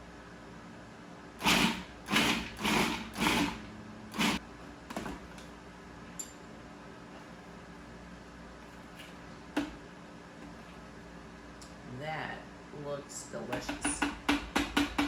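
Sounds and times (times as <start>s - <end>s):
food processor chopping: 1.4s - 4.4s.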